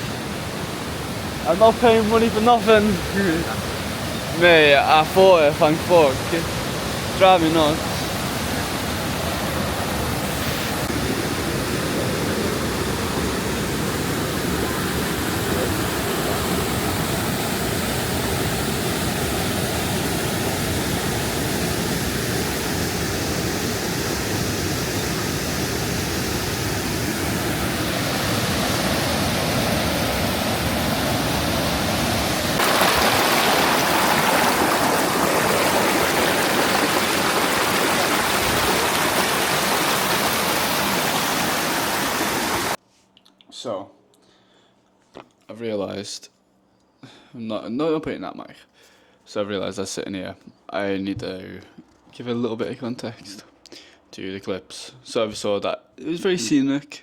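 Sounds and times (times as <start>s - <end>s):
waterfall rushing: 0.0s - 42.8s.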